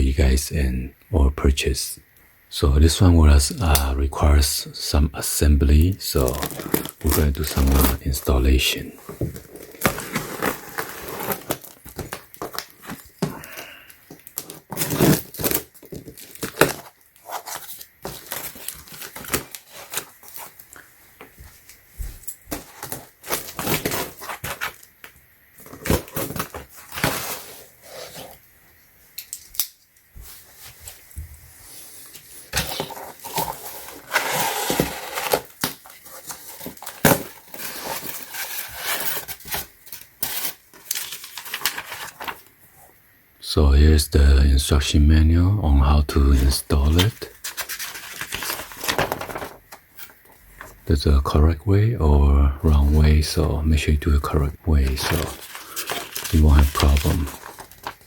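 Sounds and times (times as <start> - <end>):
packaging tearing and crinkling: 6.1 - 8.3, 9.4 - 13.3, 14.1 - 20.7, 22.5 - 24.9, 32.6 - 42.5, 46.9 - 50.2, 54.8 - 58.0.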